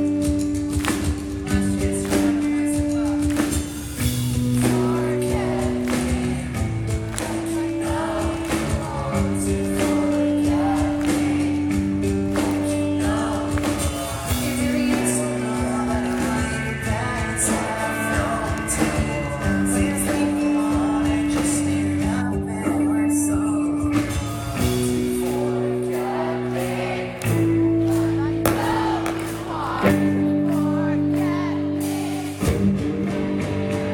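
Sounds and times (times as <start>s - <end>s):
person singing: 0.0s - 33.9s
pop-punk band playing live: 0.0s - 33.9s.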